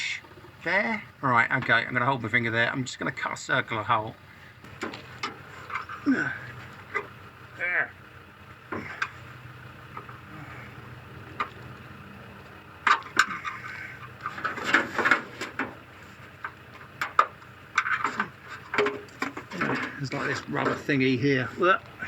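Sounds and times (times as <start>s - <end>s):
low steady hum: 0.0s - 22.0s
clicks and knocks of handling: 11.4s - 20.0s.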